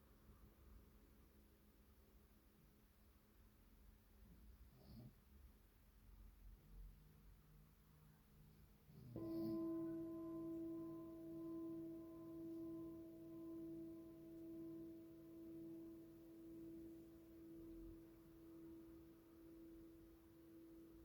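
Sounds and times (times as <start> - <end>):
singing bowl ringing: 9.2 - 21.0.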